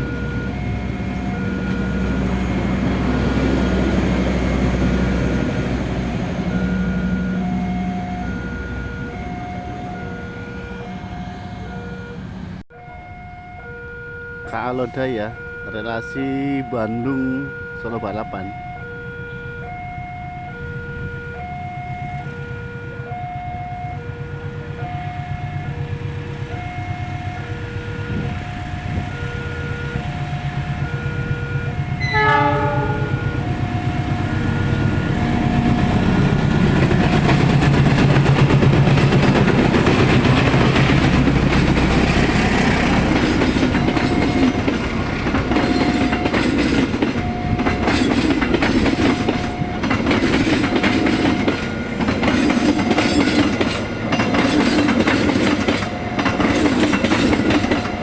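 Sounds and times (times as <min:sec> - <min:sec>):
level crossing two-tone alarm: 0:00.0 - 0:02.2, 0:06.5 - 0:24.2, 0:26.5 - 0:36.0, 0:45.6 - 0:52.1
diesel train approaching: 0:00.0 - 0:58.0
train horn blast: 0:31.0 - 0:34.6
train wheels clacking on rails: 0:35.6 - 0:58.0.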